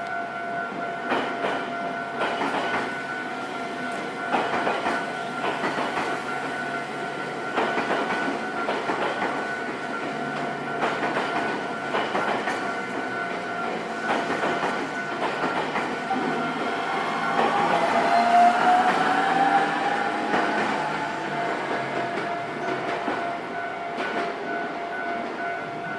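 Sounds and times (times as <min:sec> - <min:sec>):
level crossing warning bell: 0:00.0 - 0:25.9
train wheels clicking over rail joints: 0:01.1 - 0:03.0, 0:04.0 - 0:06.3, 0:07.5 - 0:23.3.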